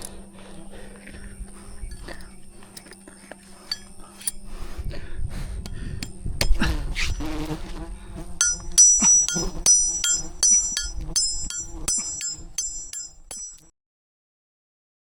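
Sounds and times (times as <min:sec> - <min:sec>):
bees buzzing: 0:00.0 - 0:13.5
bright ringing clinks: 0:03.6 - 0:04.4, 0:08.4 - 0:13.6.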